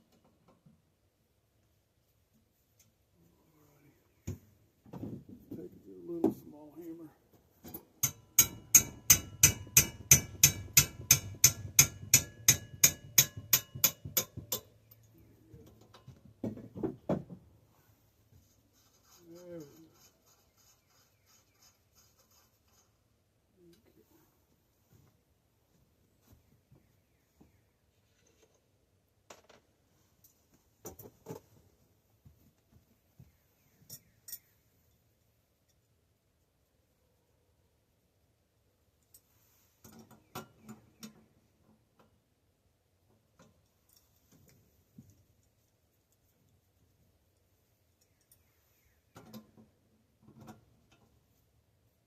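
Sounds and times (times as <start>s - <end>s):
clinks of hand tools and bicycle parts: 7.6s - 15.2s, 33.8s - 34.5s
hammer striking metal: 8.0s - 14.6s.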